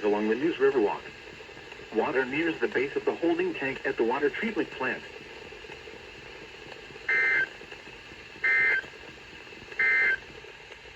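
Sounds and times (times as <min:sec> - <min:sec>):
faint receiver hiss: 0:00.0 - 0:10.3
data tones: 0:07.1 - 0:07.5, 0:08.4 - 0:08.8, 0:09.8 - 0:10.2.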